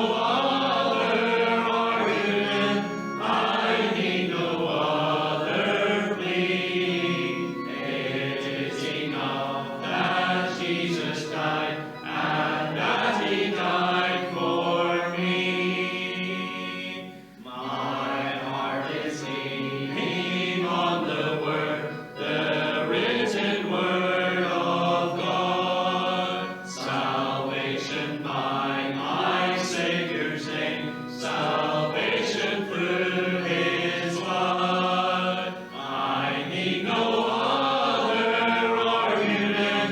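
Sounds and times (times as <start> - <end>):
congregation singing a hymn: 0.0 - 39.9.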